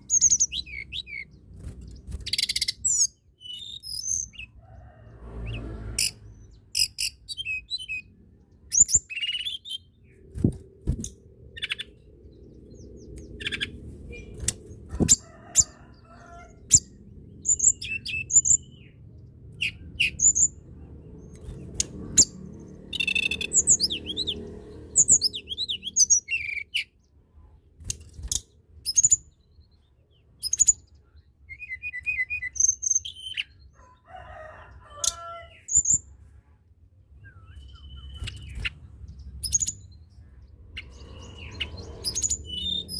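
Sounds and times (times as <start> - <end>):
songbird chirping and trilling: 0.0 - 42.9
faint low rumble: 9.9 - 26.0.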